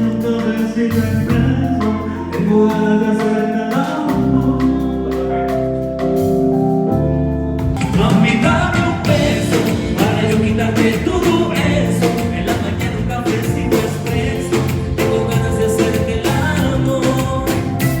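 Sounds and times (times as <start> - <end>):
live band playing a song: 0.0 - 18.0.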